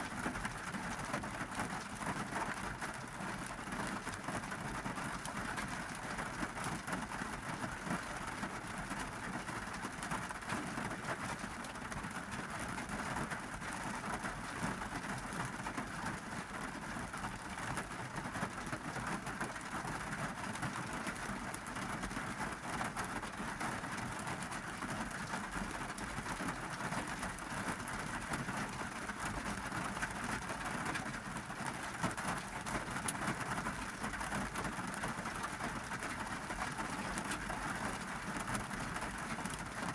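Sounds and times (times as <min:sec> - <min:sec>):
rain on a car roof: 0:00.0 - 0:39.9.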